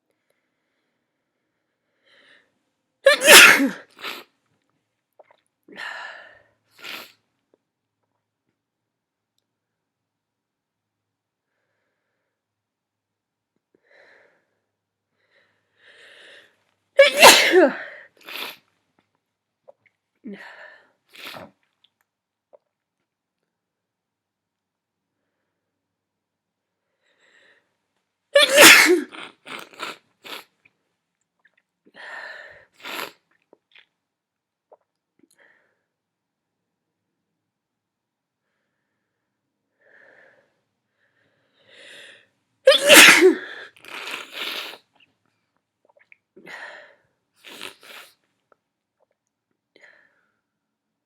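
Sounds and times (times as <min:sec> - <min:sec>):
person sneezing: 0:03.0 - 0:04.2, 0:17.0 - 0:18.6, 0:28.4 - 0:30.4, 0:42.7 - 0:44.8
person sniffling: 0:03.1 - 0:04.2, 0:17.0 - 0:18.6, 0:28.4 - 0:30.4, 0:42.7 - 0:44.8.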